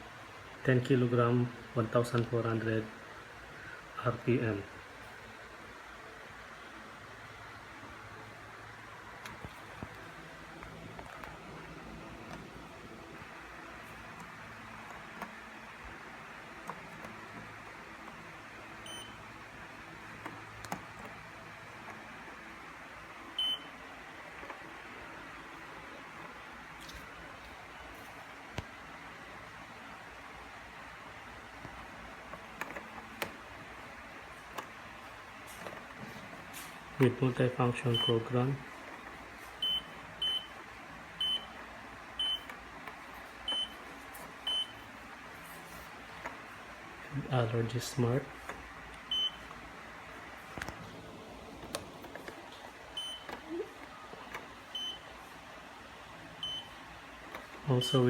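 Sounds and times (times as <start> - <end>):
washing machine panel beeps: 18.8 - 19.2, 23.4 - 23.8, 37.9 - 38.3, 39.6 - 40.6, 41.2 - 41.6, 42.2 - 42.5, 43.4 - 43.8, 44.4 - 44.8, 49.1 - 49.5, 53.0 - 53.6, 54.6 - 55.1, 56.4 - 56.8.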